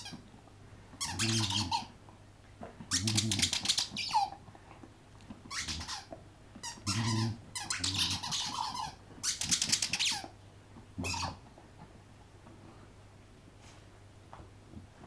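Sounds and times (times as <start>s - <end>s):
squeaky dog toy squeaking: 1.0s - 1.9s, 5.5s - 10.3s.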